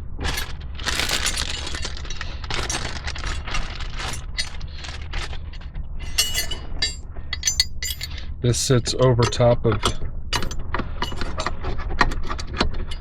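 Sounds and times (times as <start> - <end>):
steady low hum: 0.0 - 13.0
metallic clicking and clinking: 6.0 - 8.2, 9.2 - 11.4.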